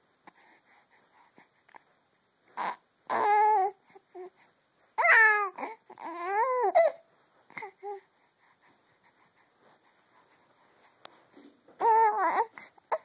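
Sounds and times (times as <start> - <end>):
baby crying: 2.6 - 3.8, 5.0 - 7.0, 11.8 - 13.0.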